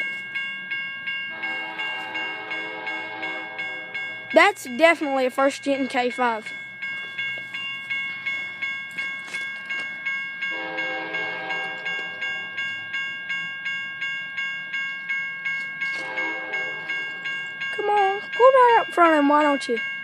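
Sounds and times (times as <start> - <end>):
crossing bell dinging: 0.0 - 20.0
locomotive horn blast: 1.3 - 4.2, 10.5 - 12.1, 16.0 - 17.0.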